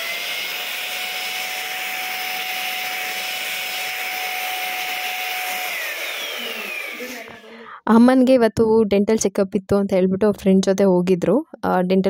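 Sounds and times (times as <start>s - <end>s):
vacuum cleaner running: 0.0s - 7.6s.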